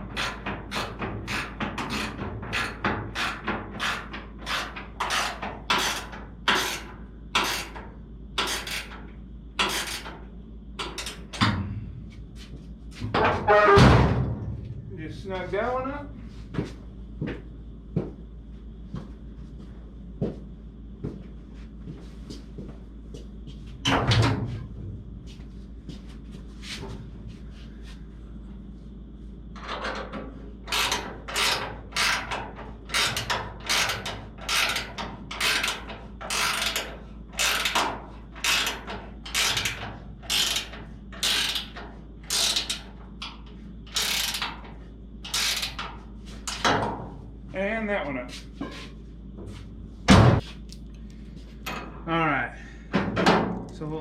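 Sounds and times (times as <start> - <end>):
hand ratchet clicking: 38.4 - 42.8, 43.9 - 44.5
back-and-forth ratcheting: 43.9 - 44.5.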